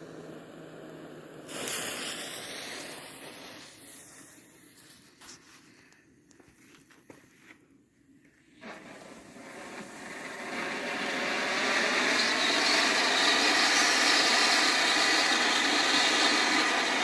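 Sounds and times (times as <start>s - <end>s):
firework fountain hissing: 0.0s - 5.5s, 8.6s - 17.0s
firework crackles and pops: 1.4s - 5.4s, 8.6s - 17.0s.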